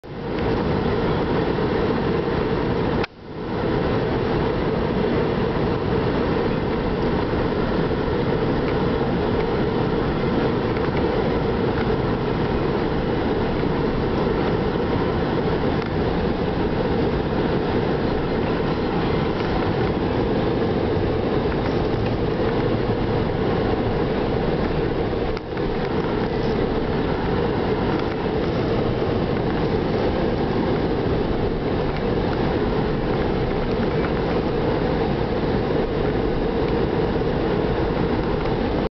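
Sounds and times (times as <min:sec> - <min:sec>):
car interior driving noise: 0:00.0 - 0:38.9.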